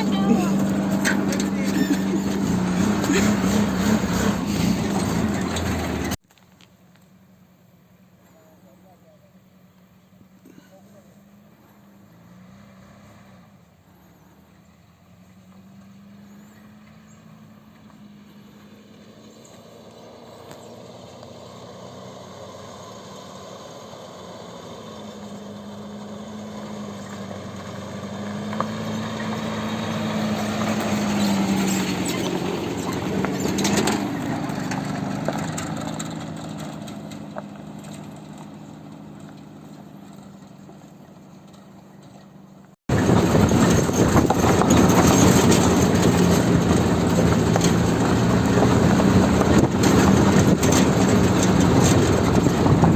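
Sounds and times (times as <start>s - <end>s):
vehicle engine passing by: 0.0s - 6.2s, 10.7s - 52.9s
steady rumble: 42.9s - 52.9s.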